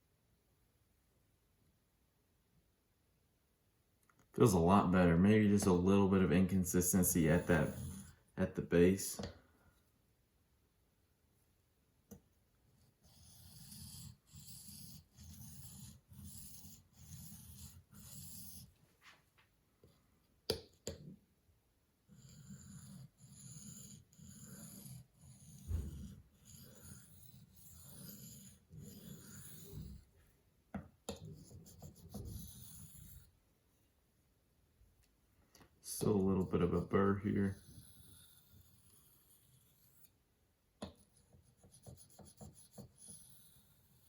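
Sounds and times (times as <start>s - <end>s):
knife scraping on sharpening stone: 26.4s - 30.0s.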